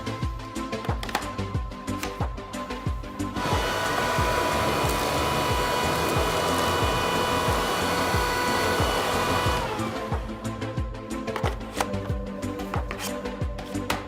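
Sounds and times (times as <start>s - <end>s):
background music with beat: 0.0s - 14.0s
vacuum cleaner motor whining: 3.3s - 10.5s.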